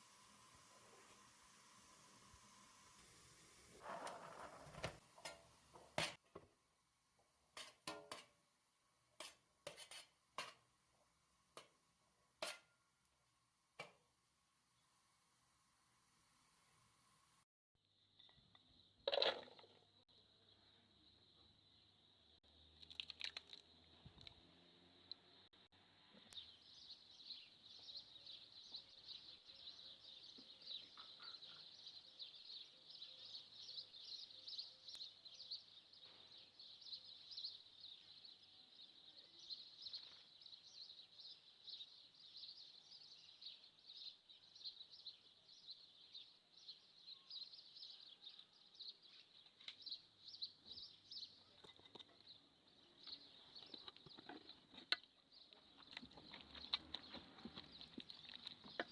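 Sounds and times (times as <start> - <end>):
food sizzling in a pan: 0.0 - 6.2.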